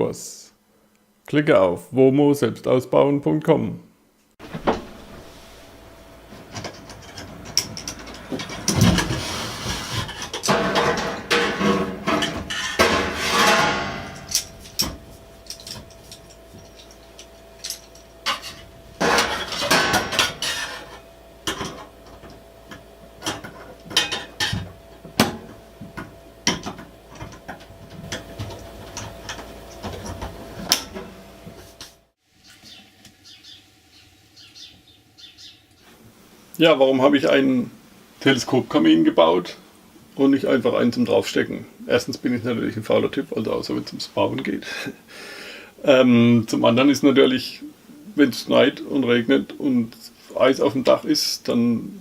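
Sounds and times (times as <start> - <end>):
rustling and scraping: 4.4 - 22.4
sharp knocks and clanks: 6.3 - 31.1.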